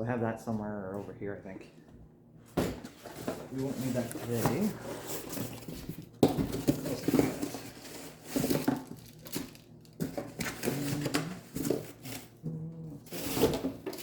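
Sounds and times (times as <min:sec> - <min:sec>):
packaging rustling: 0:03.0 - 0:12.4.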